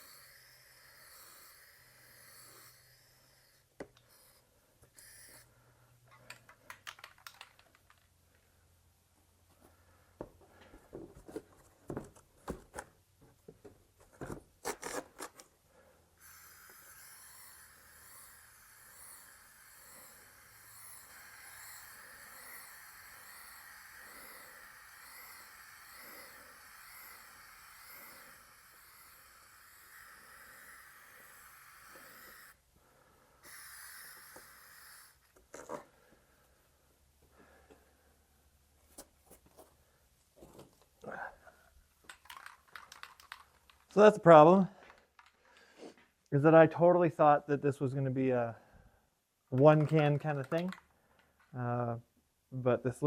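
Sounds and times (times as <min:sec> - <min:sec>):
spray paint can hissing: 0:00.0 - 0:05.5, 0:16.2 - 0:32.6, 0:33.4 - 0:35.4
sharp clicks and knocks: 0:06.1 - 0:08.1, 0:42.0 - 0:44.0, 0:49.6 - 0:51.5.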